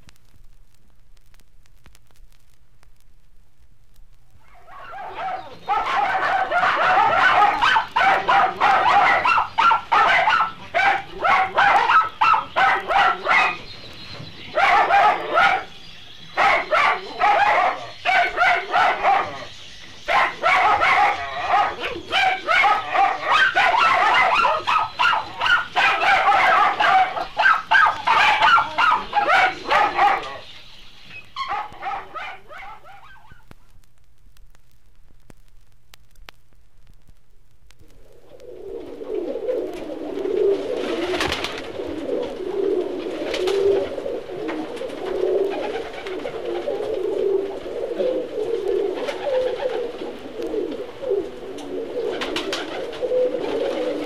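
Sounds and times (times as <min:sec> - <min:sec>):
puppies yipping and whimpering: 0:20.1 - 0:33.4.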